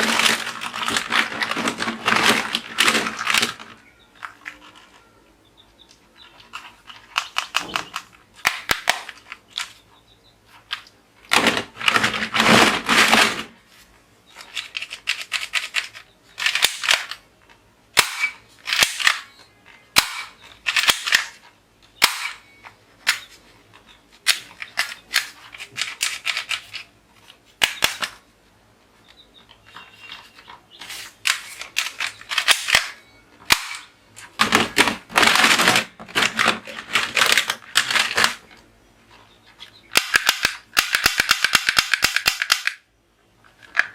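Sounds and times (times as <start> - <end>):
toy guns firing clicking shots: 8.4 - 9.2, 15.1 - 17.2, 18.0 - 19.3, 19.9 - 21.4, 22.0 - 22.4, 27.6 - 28.1, 31.2 - 33.9, 39.9 - 42.8.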